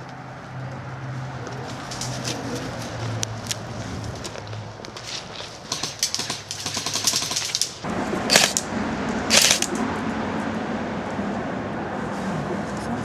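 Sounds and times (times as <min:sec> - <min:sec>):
airsoft guns firing: 0:05.6 - 0:08.7, 0:09.3 - 0:09.8.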